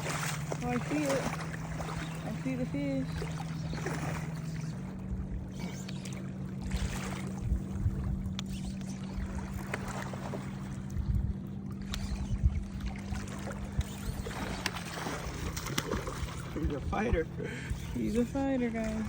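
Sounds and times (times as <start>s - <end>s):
motor humming: 0.0s - 19.0s
water splashing: 0.0s - 19.0s.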